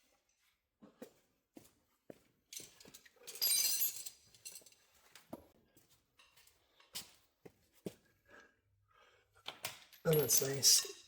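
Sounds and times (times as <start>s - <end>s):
jangling rattle: 10.0s - 10.9s
metallic tool clinks: 10.0s - 11.0s.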